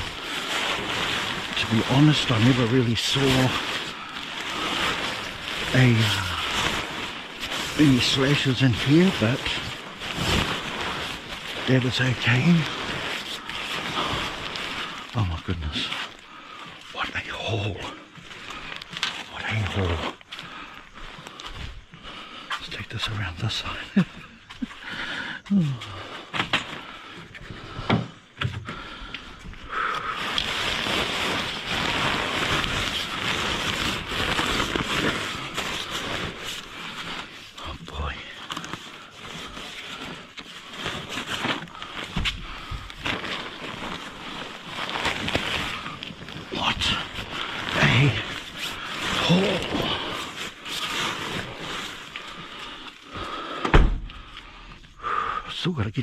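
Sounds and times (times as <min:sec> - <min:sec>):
heavy thump: 0:53.6 - 0:54.1.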